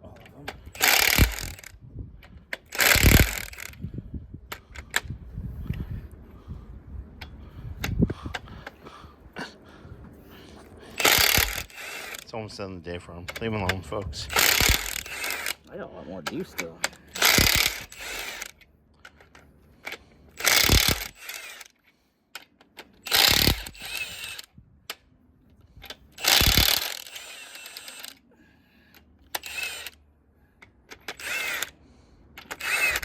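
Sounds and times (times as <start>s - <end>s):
power tool loosening bolts: 0.2s - 3.9s, 10.9s - 12.4s, 13.2s - 25.0s, 25.8s - 28.2s, 28.9s - 30.0s, 30.6s - 33.0s.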